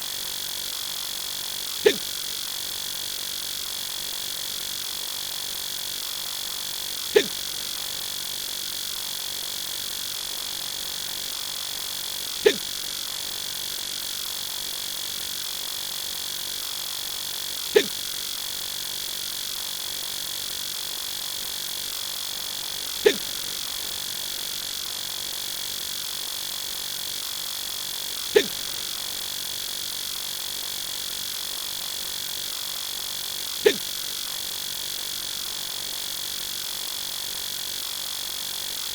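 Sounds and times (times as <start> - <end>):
man hiccuping: 1.8 - 2.1, 7.2 - 7.5, 12.4 - 12.7, 17.8 - 18.0, 23.0 - 23.4, 28.3 - 28.9, 33.6 - 33.9.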